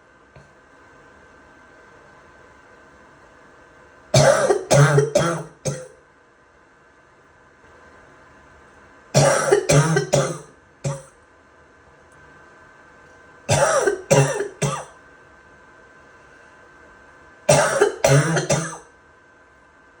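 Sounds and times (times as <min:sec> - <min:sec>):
person coughing: 0:04.2 - 0:06.0, 0:09.2 - 0:11.1, 0:13.5 - 0:14.9, 0:17.5 - 0:18.9.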